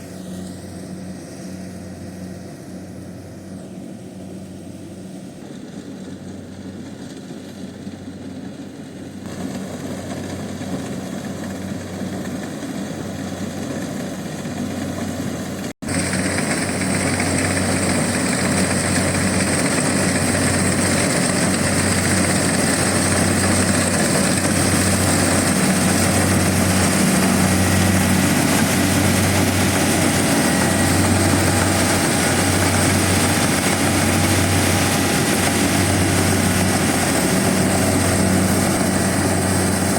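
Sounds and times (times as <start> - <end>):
combine harvester engine drone: 0.0 - 39.9.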